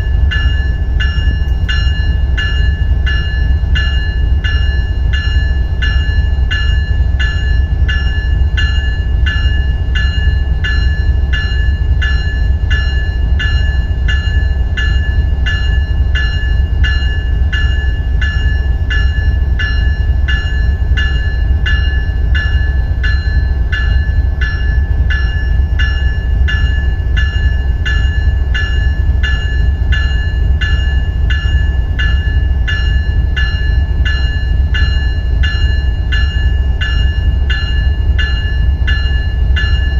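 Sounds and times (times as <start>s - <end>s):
electronic locomotive bell ringing: 0.0s - 39.9s
steady low rumble: 0.0s - 39.9s.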